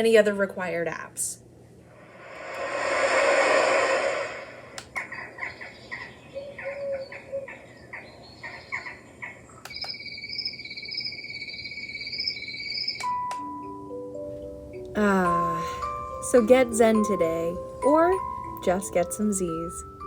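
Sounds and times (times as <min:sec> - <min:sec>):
rush of noise: 0:01.9 - 0:05.5
recorded birdsong chirps: 0:05.0 - 0:13.5.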